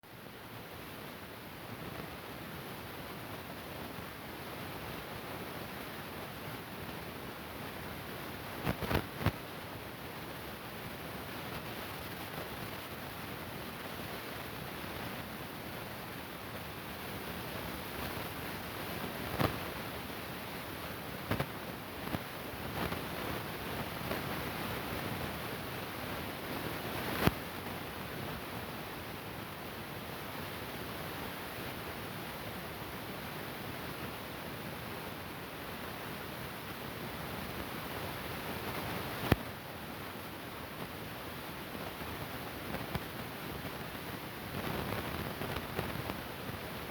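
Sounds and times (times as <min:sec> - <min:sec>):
recording noise hiss: 0:00.0 - 0:46.9.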